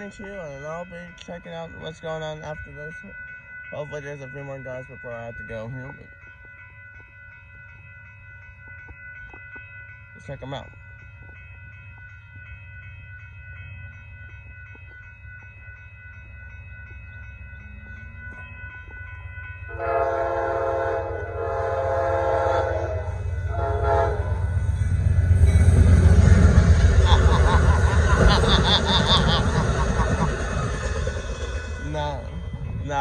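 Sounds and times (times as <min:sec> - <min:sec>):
train horn blasts: 0:19.7 - 0:24.5
diesel locomotive rumble: 0:19.8 - 0:33.0.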